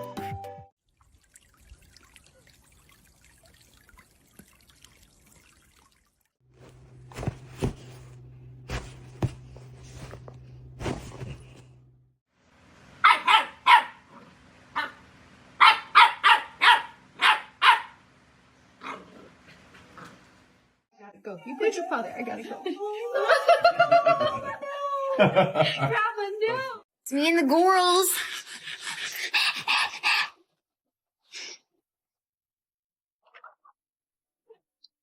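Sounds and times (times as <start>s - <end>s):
dog barking: 13.0s - 14.1s, 15.6s - 18.0s.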